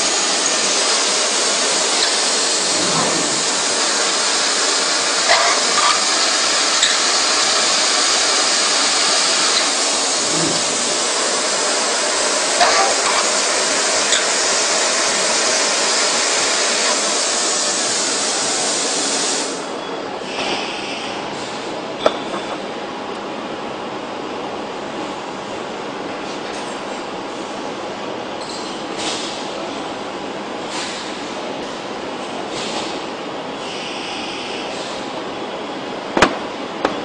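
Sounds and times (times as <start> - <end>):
machine loud steady hiss: 0.0 - 21.9, 28.4 - 35.4.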